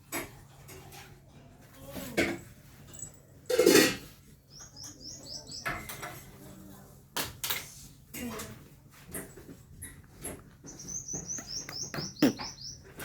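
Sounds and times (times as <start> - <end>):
small bird chirping: 4.5 - 6.0, 10.6 - 13.0.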